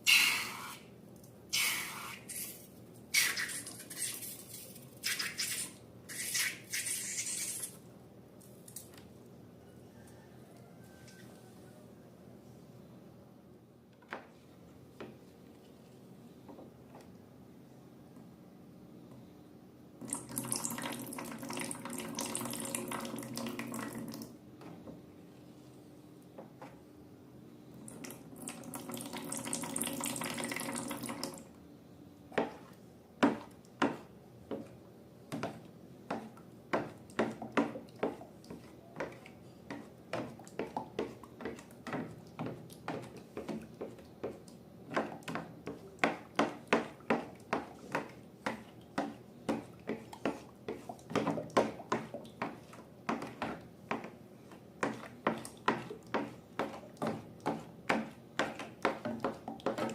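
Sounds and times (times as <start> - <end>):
liquid pouring: 28.1 - 31.5
slime stirred and squished: 35.4 - 59.9.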